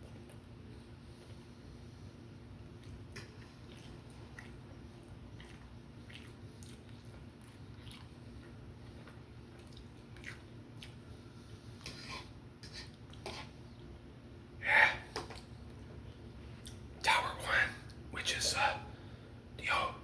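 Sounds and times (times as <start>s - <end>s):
person chewing food: 2.6s - 13.6s, 15.2s - 16.9s.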